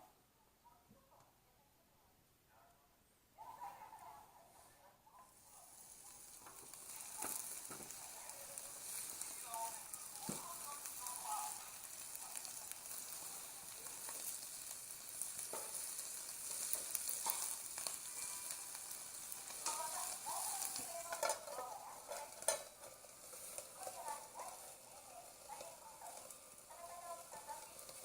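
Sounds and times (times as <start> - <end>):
burning paper crackling: 5.3 - 28.0
fire popping and snapping: 5.8 - 28.0.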